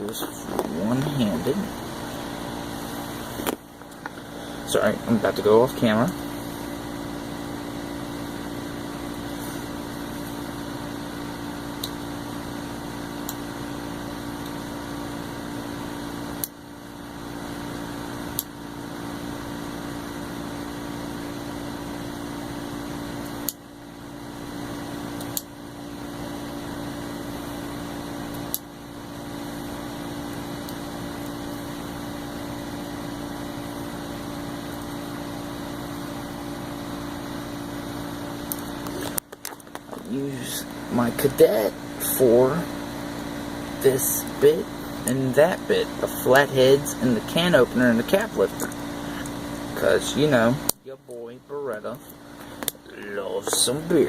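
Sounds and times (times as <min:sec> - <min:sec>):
appliance humming: 0:00.0 - 0:54.0.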